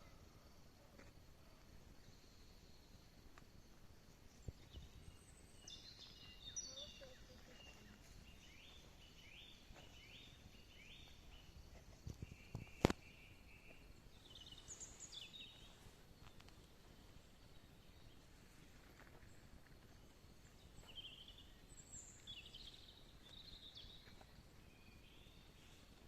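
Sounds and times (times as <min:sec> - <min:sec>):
birds chirping: 0:03.8 - 0:18.5.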